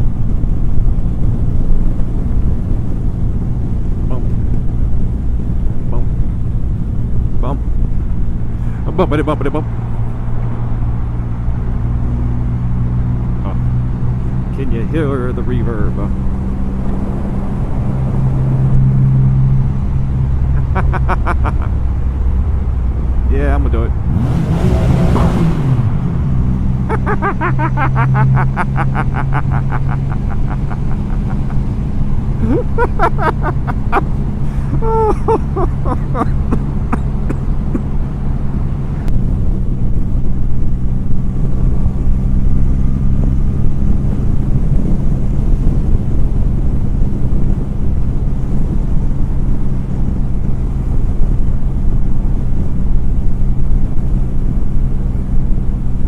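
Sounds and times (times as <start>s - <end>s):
wind rush over microphone: 38.8s - 56.0s.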